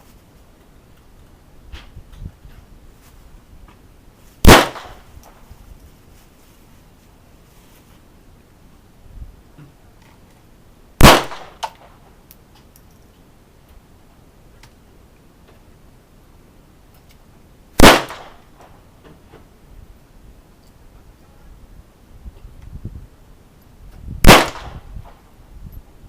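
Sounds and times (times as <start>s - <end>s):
loud gunshots with echo: 4.4s - 5.0s, 11.0s - 11.6s, 17.8s - 18.4s, 24.2s - 24.9s
faint gunshot: 4.4s - 5.1s, 11.0s - 11.9s, 17.8s - 18.4s, 24.2s - 25.2s.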